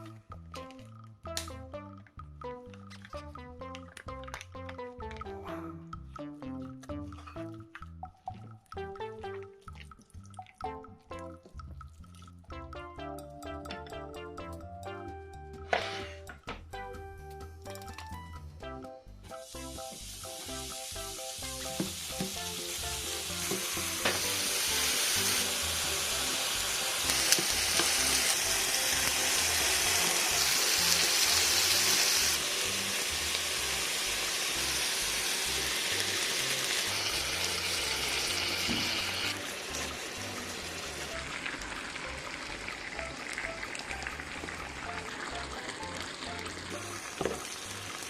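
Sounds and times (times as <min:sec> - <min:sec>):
faint background music: 0:00.0 - 0:48.0
food sizzling as it fries: 0:19.2 - 0:48.0.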